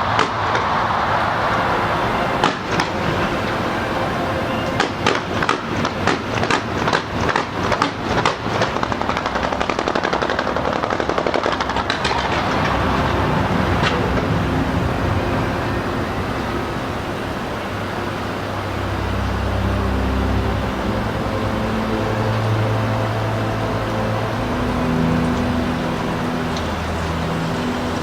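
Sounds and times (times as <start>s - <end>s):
fireworks bangs: 0.0s - 15.6s
fireworks crackling: 0.0s - 19.2s
low steady rumble: 8.9s - 28.0s.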